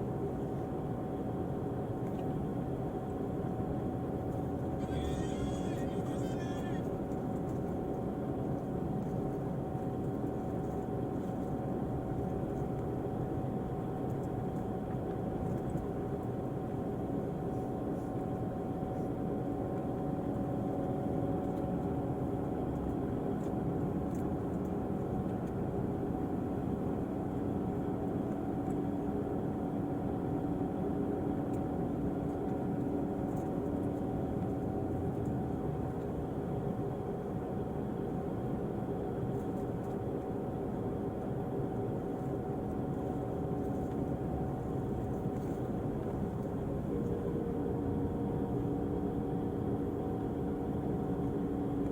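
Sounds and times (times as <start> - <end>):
diesel coach engine droning: 4.5 - 7.6.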